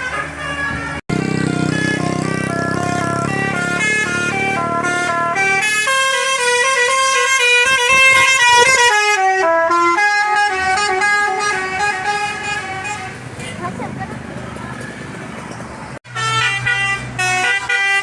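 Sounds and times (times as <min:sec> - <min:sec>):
bus musical horns playing tune: 0:00.0 - 0:18.0.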